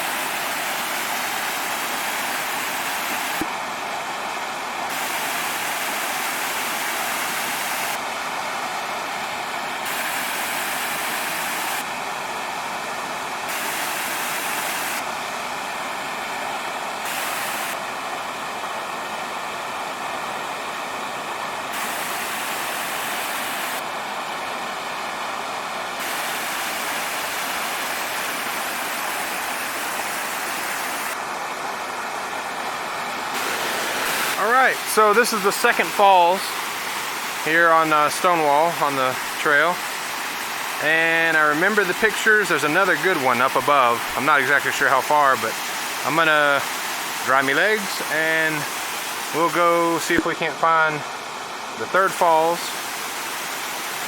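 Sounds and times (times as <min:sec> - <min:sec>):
small waterfall rushing: 0:00.0 - 0:54.0.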